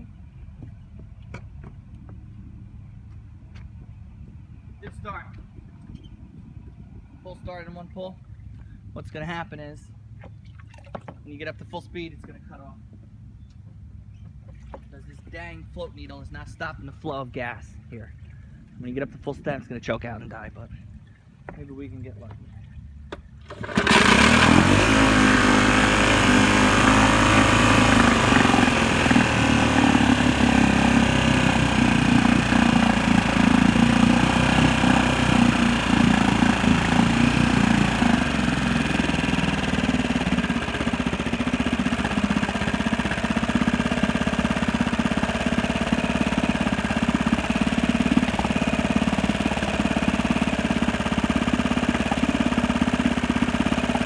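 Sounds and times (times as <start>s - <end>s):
outboard motor running: 20.4s - 54.0s.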